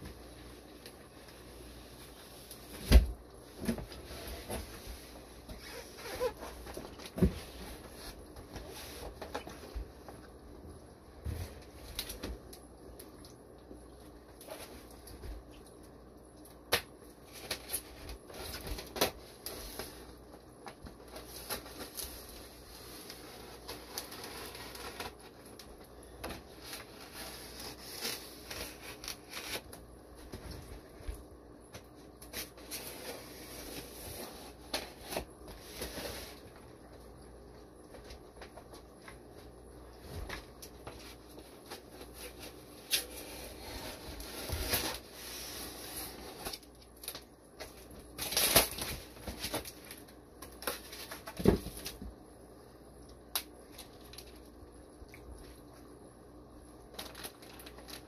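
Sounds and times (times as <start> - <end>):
packaging rustling and crackling: 17.2 - 30.7, 40.2 - 52.1, 56.9 - 58.0.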